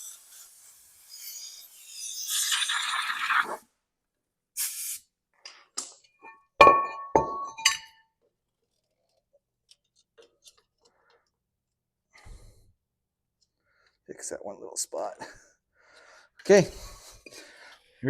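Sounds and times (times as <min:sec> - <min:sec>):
compressed air blowgun hiss: 0:00.0 - 0:02.8, 0:04.6 - 0:05.0.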